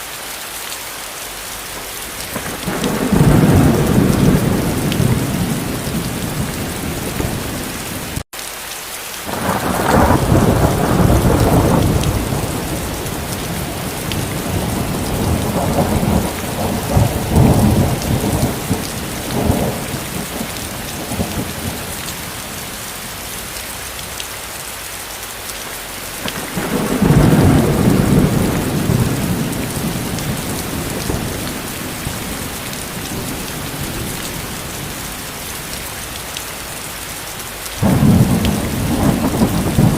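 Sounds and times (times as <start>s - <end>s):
heavy rain: 0.0s - 39.9s
thunder rumbling: 1.7s - 8.2s, 9.3s - 24.2s, 25.9s - 37.0s, 37.8s - 39.9s
sharp thunder cracks: 2.2s - 7.6s, 9.3s - 22.7s, 26.3s - 35.4s, 37.8s - 39.9s.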